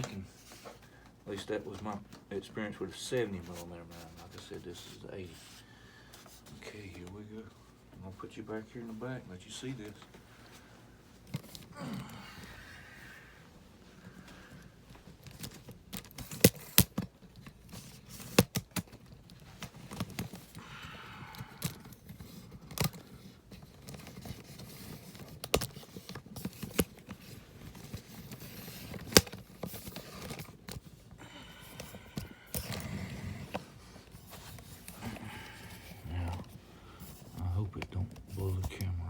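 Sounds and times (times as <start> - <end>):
scraping and rustling: 21.7 - 38.9.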